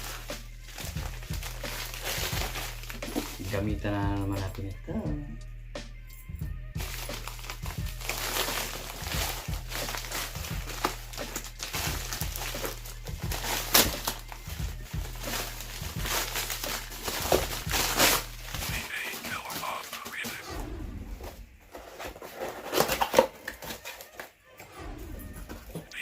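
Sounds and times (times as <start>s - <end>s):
wrapping crinkling and tearing: 0.0s - 3.6s, 6.8s - 20.4s, 21.8s - 24.4s.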